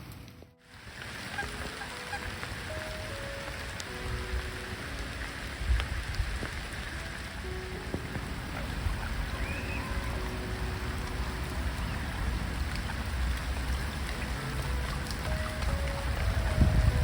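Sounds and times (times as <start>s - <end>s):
steady rain hiss: 0.0s - 17.0s
faint high chirp: 9.3s - 10.2s.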